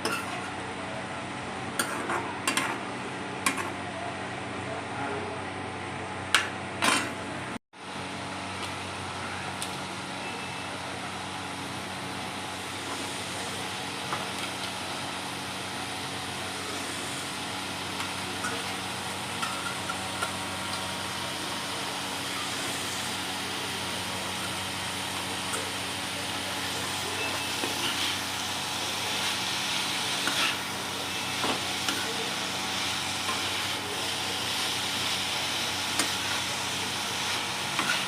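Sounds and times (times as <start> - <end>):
food sizzling in a pan: 14.0 - 38.0.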